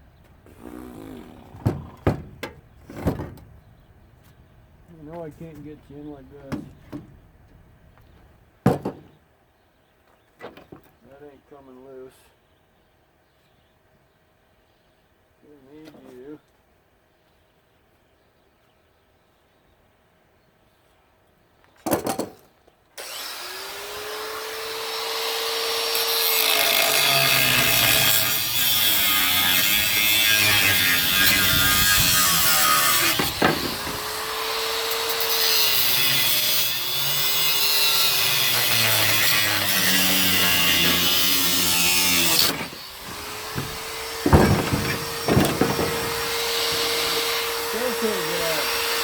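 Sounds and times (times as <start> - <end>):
angle grinder cutting metal: 23.0 - 49.0.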